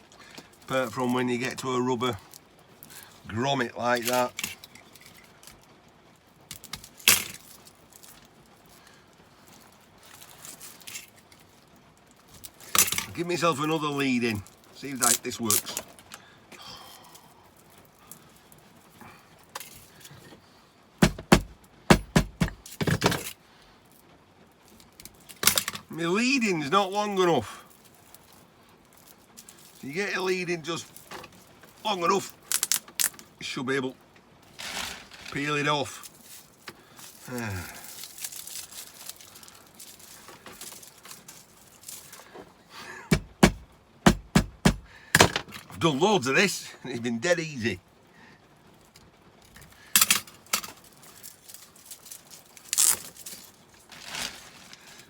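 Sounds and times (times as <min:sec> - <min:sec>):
cable rustling: 0:00.0 - 0:16.3, 0:17.0 - 0:20.4, 0:24.6 - 0:43.8, 0:48.8 - 0:55.0
sharp knocks: 0:21.0 - 0:23.0, 0:43.1 - 0:45.4
cable jacket clicks and rattles: 0:49.5 - 0:55.0.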